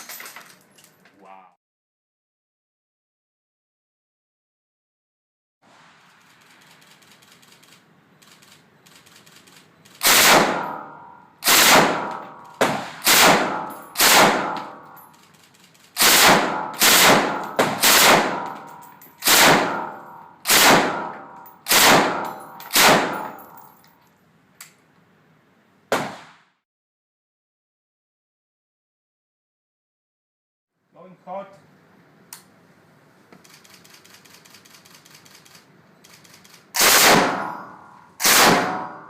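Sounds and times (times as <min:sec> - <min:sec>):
gunshots echoing: 0:10.0 - 0:15.0, 0:16.0 - 0:23.6, 0:25.9 - 0:26.5, 0:36.8 - 0:39.0.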